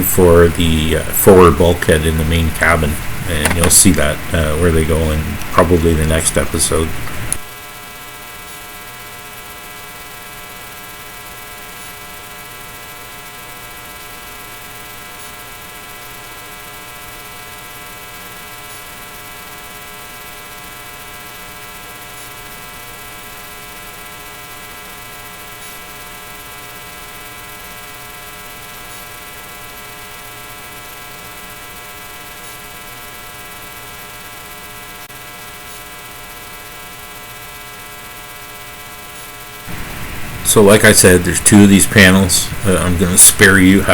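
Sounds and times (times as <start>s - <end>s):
electrical hum: 0.0s - 7.5s, 37.3s - 43.9s.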